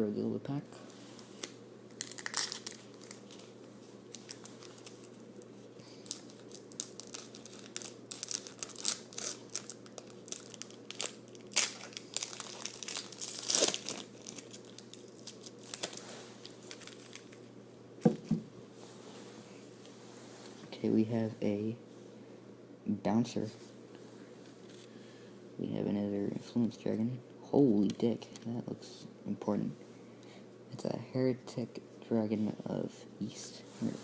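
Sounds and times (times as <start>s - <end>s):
foil wrapper crinkling and tearing: 1.4s - 3.5s, 4.1s - 17.5s.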